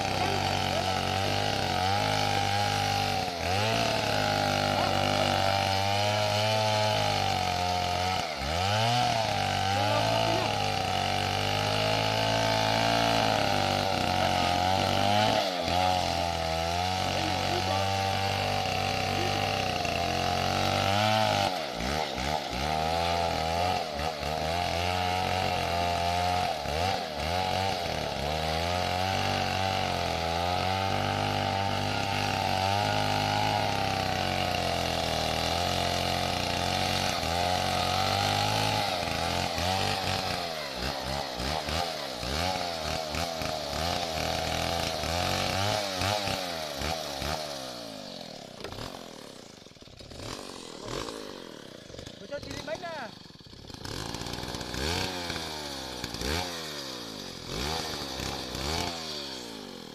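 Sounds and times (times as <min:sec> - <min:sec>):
chainsaw running: 0:00.0 - 0:59.9.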